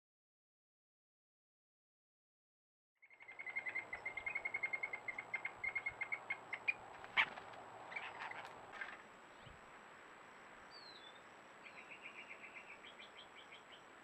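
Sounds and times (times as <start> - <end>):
bird calling in clipped notes: 3.2 - 9.6.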